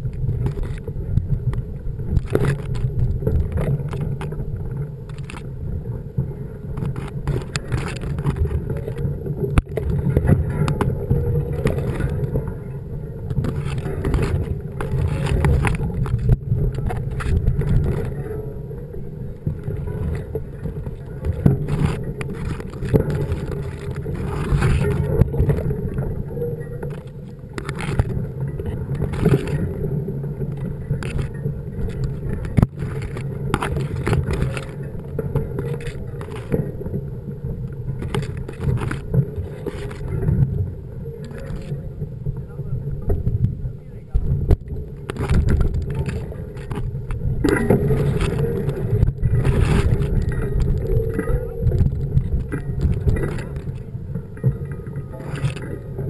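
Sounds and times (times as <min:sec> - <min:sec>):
bike rattles and knocks: 0:00.0 - 0:56.0
mountain bike rumbling over rough ground: 0:00.0 - 0:56.0.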